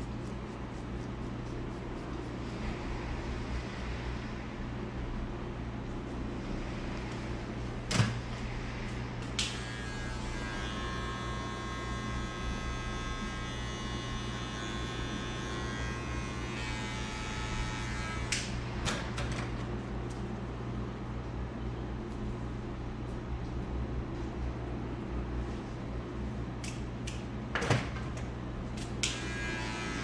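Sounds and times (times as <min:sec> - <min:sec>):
steady low hum: 0:00.0 - 0:30.0
electric hair clippers buzzing: 0:09.4 - 0:18.6, 0:29.0 - 0:30.0.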